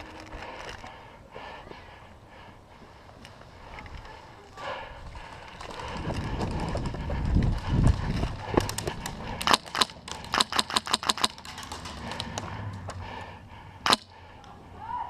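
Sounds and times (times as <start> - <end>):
low muffled rumble: 5.0 - 9.4
airsoft gun shots: 9.4 - 11.4, 13.8 - 14.1.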